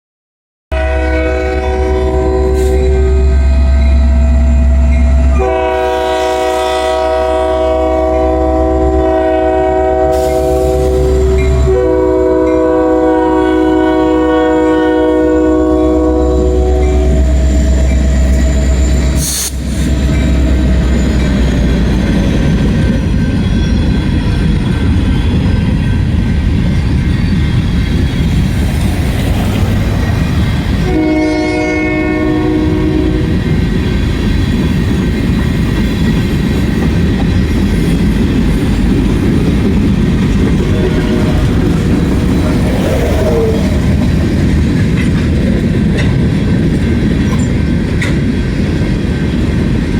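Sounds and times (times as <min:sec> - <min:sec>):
locomotive air horn: 0:00.7 - 0:20.9, 0:30.3 - 0:33.6, 0:40.6 - 0:44.2
train rumble and wheel clatter: 0:00.7 - 0:49.9.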